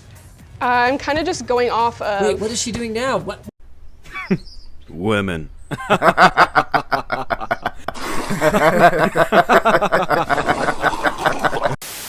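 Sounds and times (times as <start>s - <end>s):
person laughing: 4.1s - 4.4s, 5.7s - 11.8s.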